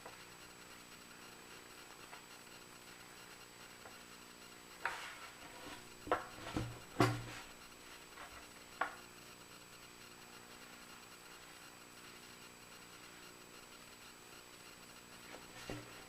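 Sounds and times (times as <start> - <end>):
objects knocking when set down: 6.1 - 7.5.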